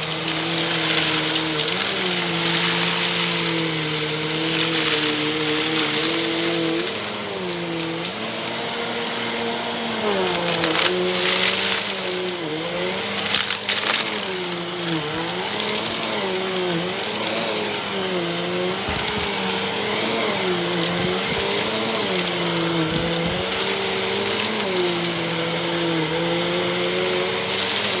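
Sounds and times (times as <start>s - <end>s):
crackles: 0.0s - 9.4s, 10.2s - 28.0s
vacuum cleaner motor hum: 0.0s - 28.0s.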